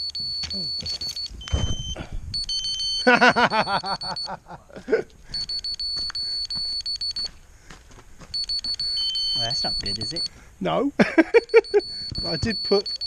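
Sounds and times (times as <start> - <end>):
lower electronic beep: 0.0 - 4.3, 5.4 - 7.3, 8.3 - 10.3, 11.4 - 13.0
fast high electronic beeps: 0.0 - 4.4, 5.4 - 7.3, 8.3 - 10.3, 11.4 - 13.0.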